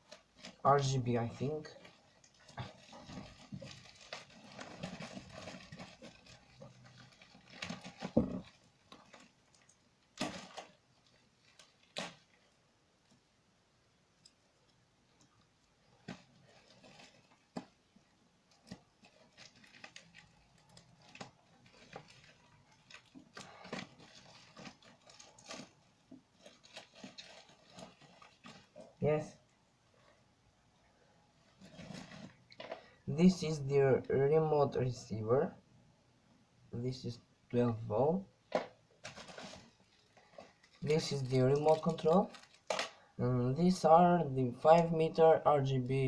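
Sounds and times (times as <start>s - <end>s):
packaging rustling: 1.4s - 12.6s, 16.0s - 29.0s, 31.4s - 33.0s, 38.5s - 43.1s.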